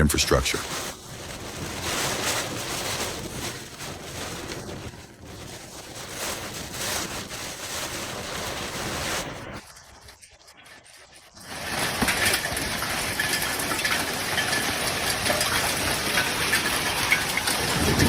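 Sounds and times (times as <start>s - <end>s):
rushing floodwater: 11.5s - 18.0s
wind buffeting microphone: 17.4s - 18.0s.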